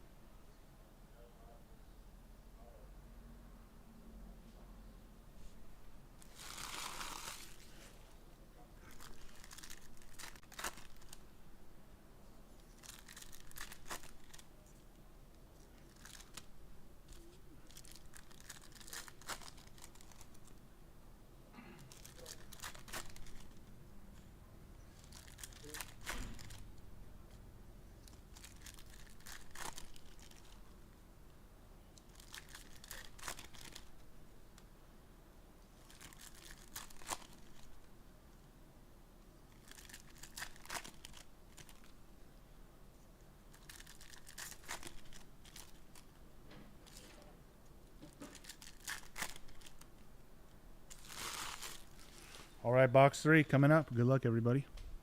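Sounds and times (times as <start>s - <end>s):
card pack wrappers tearing and crinkling: 6.2s - 7.9s, 8.8s - 11.2s, 12.6s - 14.5s, 15.6s - 16.5s, 17.1s - 20.6s, 21.8s - 23.6s, 25.0s - 26.7s, 28.0s - 30.7s, 32.0s - 34.0s, 35.8s - 37.8s, 39.5s - 42.0s, 43.5s - 46.1s, 48.2s - 49.9s, 50.9s - 52.4s.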